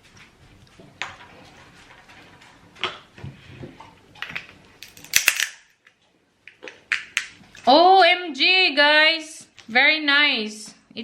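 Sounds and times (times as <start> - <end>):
walnut shell cracking: 4.3 - 5.9, 6.5 - 7.4.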